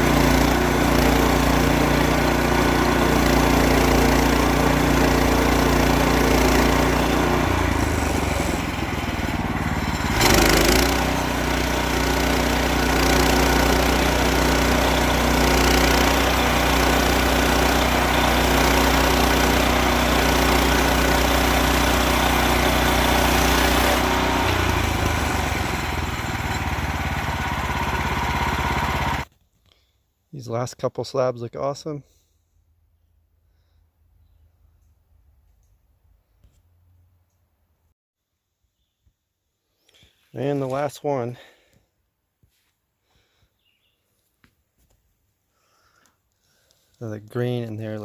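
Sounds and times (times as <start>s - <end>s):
bandsaw sawing wood: 0.0s - 29.3s
small gasoline engine running: 0.0s - 29.3s.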